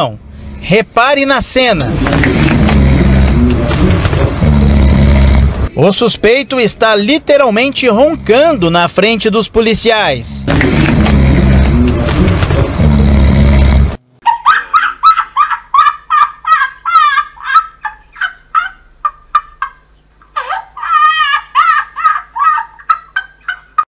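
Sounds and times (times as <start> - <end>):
loud mixed sound: 0.2 - 5.9, 9.9 - 14.2.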